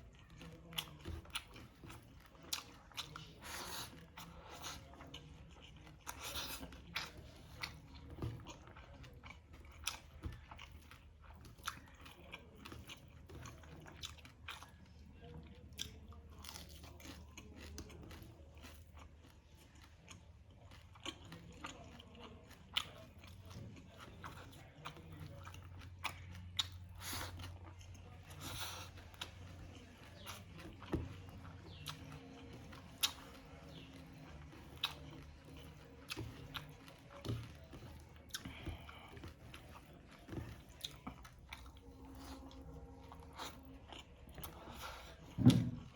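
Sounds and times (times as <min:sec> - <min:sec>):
faint low hum: 0:00.0 - 0:45.9
wet chewing with crunches: 0:00.0 - 0:45.9.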